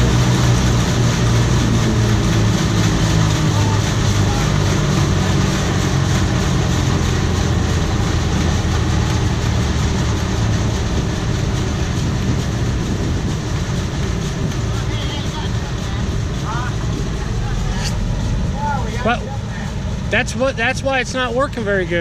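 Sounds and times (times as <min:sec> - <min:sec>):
diesel engine drone: 0:00.0 - 0:22.0.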